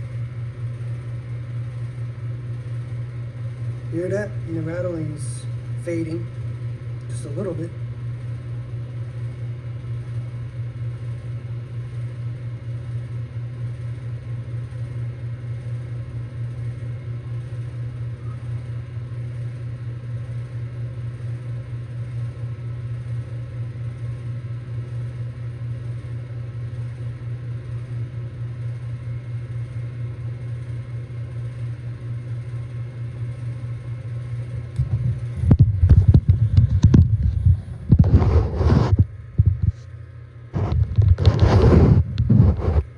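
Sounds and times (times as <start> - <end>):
compressor humming: 0.0 - 42.9
rough low rumble: 34.7 - 39.8.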